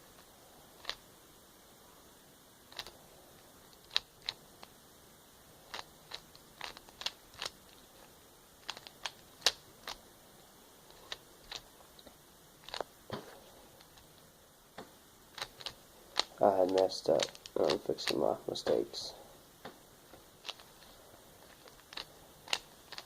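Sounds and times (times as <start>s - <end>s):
puzzle cube clicking: 0.8s - 1.0s, 2.7s - 3.0s, 3.7s - 4.7s, 5.7s - 10.0s, 10.9s - 11.7s, 12.6s - 12.9s, 15.3s - 18.3s, 20.4s - 23.0s.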